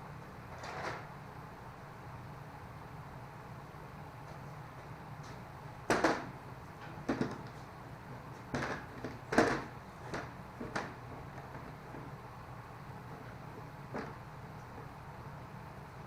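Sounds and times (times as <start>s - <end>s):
steady low hum: 0.0s - 16.0s
wooden frame knocks and bumps: 7.0s - 7.5s.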